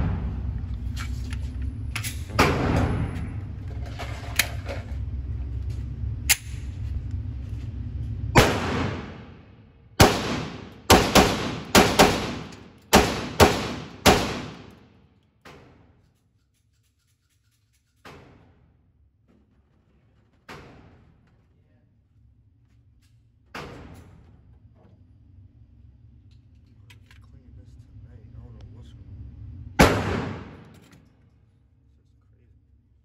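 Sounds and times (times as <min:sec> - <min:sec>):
gunshots with ringing tail: 0:08.4 - 0:14.8, 0:29.8 - 0:30.7.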